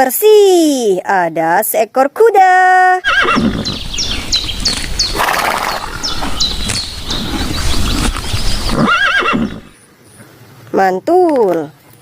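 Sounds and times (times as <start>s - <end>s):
birds chirping: 3.0s - 10.3s.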